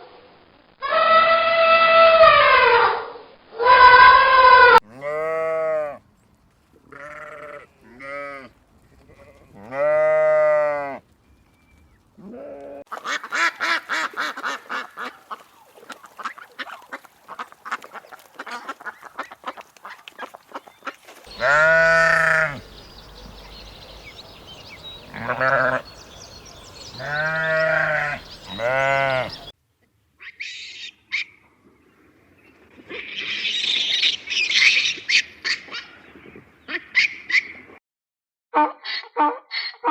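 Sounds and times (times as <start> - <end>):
livestock bleating: 3.6 - 6.0, 6.9 - 8.5, 9.1 - 11.0, 12.2 - 12.8, 21.3 - 23.3, 25.0 - 26.0, 26.9 - 29.5
harsh bird-like calls: 13.0 - 29.5.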